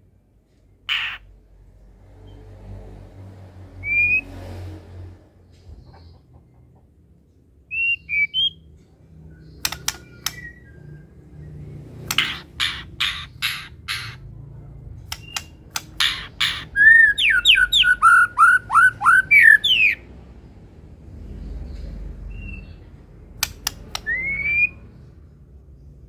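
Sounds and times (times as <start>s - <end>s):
bird harsh calls: 0.9s - 1.3s, 12.0s - 14.3s, 15.1s - 20.0s
bird whistled notes: 24.0s - 24.8s.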